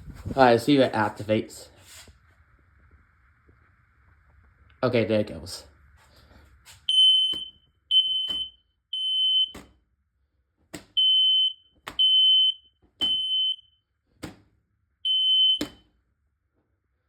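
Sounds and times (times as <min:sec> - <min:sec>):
smoke alarm beeping: 0:06.9 - 0:09.7, 0:10.9 - 0:13.8, 0:15.0 - 0:16.0.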